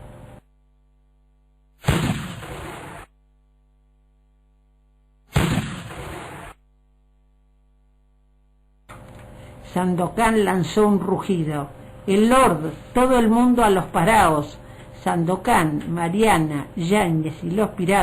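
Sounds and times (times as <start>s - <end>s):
cannon shot boom: 1.8s - 3.1s, 5.3s - 6.6s.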